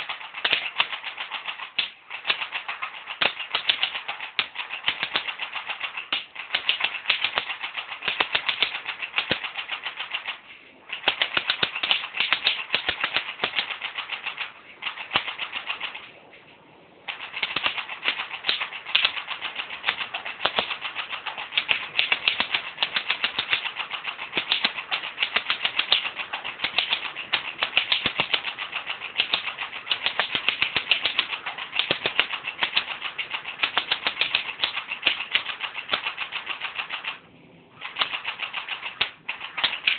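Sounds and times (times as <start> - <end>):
bb gun firing rapid shots: 0.0 - 16.1, 17.0 - 37.2, 37.8 - 39.9.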